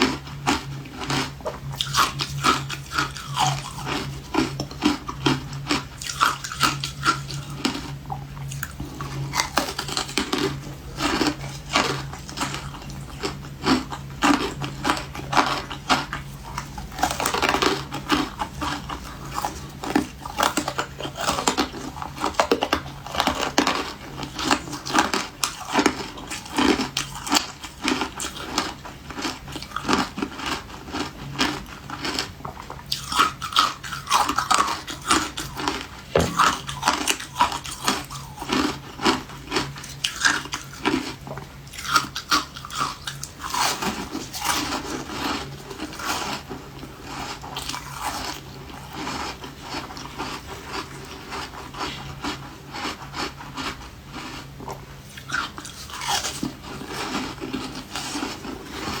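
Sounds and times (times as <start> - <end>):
ice crunching while chewed: 0.0 - 59.0.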